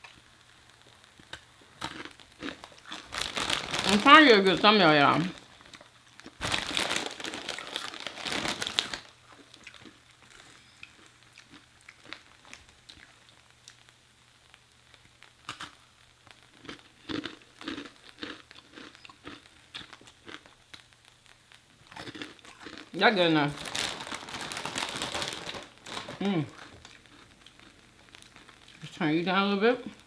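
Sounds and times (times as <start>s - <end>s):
packet crinkling: 0.0s - 13.1s, 21.8s - 29.0s
crunching and chewing chips: 1.2s - 13.8s, 15.4s - 15.9s, 16.5s - 20.9s, 21.8s - 29.0s.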